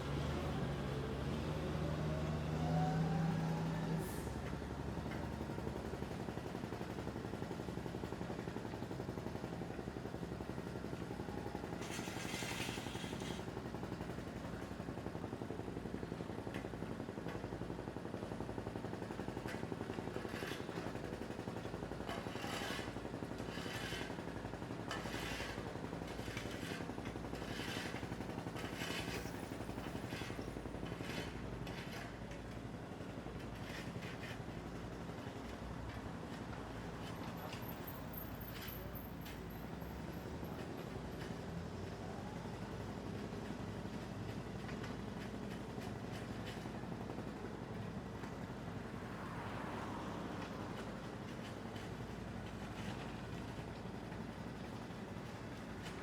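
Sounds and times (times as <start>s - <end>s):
construction machinery engine running: 26.0s - 32.7s, 43.0s - 55.6s.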